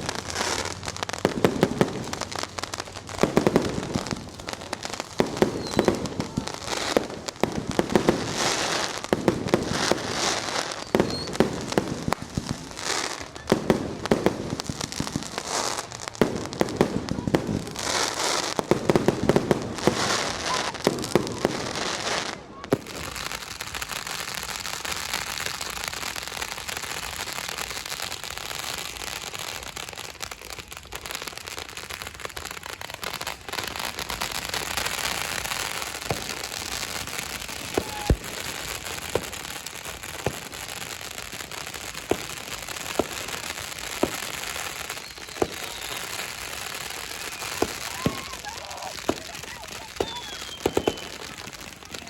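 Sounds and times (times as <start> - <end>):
fireworks crackling: 0.0 - 52.0
sharp firework bangs: 35.8 - 40.6, 42.0 - 52.0.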